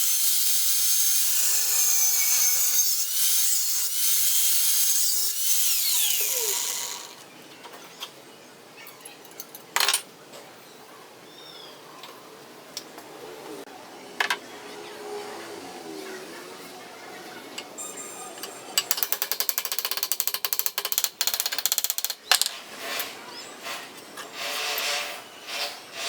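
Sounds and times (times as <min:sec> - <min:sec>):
metal mechanism clicking rapidly: 0:18.8 - 0:22.3.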